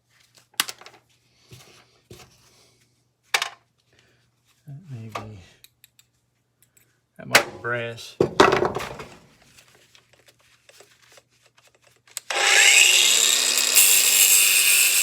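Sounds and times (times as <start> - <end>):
power tool motor running: 12.3 - 15.0.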